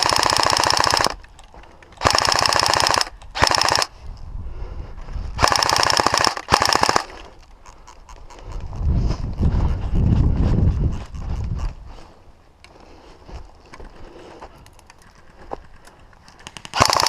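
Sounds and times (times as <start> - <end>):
airsoft rifle firing bursts: 0.0 - 1.2, 2.0 - 4.0, 5.4 - 7.3, 16.4 - 17.0.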